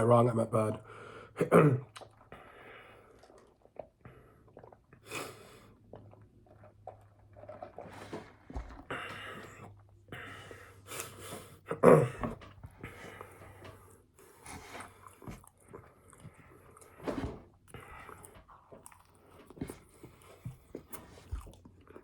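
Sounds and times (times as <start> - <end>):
breaths: 0.8 - 1.4, 2.3 - 3.4, 7.9 - 15.1
chewing and mouth noises: 1.8 - 11.6, 12.6 - 22.0.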